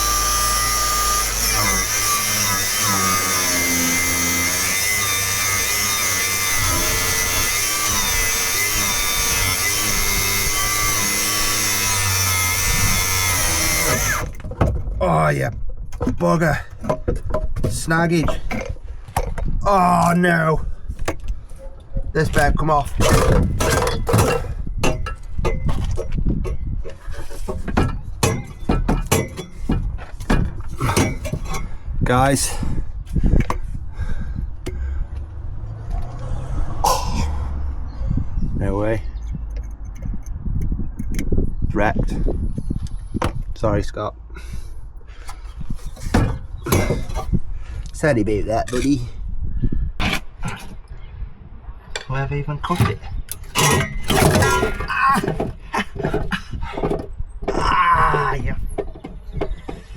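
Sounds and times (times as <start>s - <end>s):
angle grinder cutting steel pipe: 0.0s - 14.4s, 23.0s - 31.7s
metal knocks and clanks: 0.0s - 15.0s, 15.7s - 19.6s, 22.3s - 31.8s, 45.9s - 47.4s, 51.9s - 59.9s.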